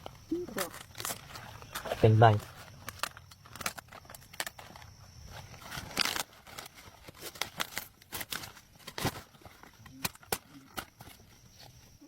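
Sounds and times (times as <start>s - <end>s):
plants crackling and rustling: 0.0s - 12.0s.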